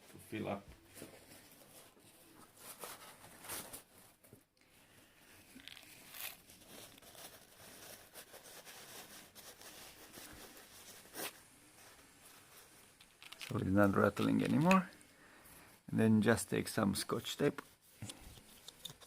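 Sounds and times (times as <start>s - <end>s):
paper napkin rustling and tearing: 5.4s - 14.9s.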